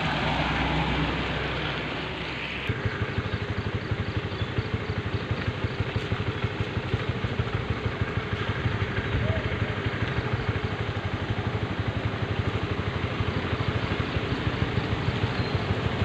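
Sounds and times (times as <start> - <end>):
rain: 0.0 - 2.7, 9.8 - 16.0
engine idling: 0.0 - 16.0.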